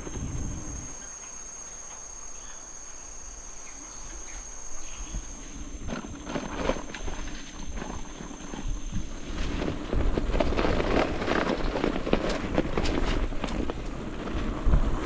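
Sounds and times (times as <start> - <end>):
bicycle tyres crunching on dirt: 0.0 - 15.0
wind rumbling on microphone: 0.0 - 15.0
bike rattling: 3.9 - 15.0.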